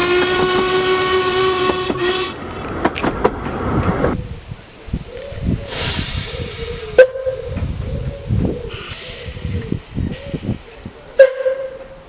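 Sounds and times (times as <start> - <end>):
steam hissing: 5.6 - 7.0, 8.8 - 11.5
low steam puffs: 5.6 - 11.6.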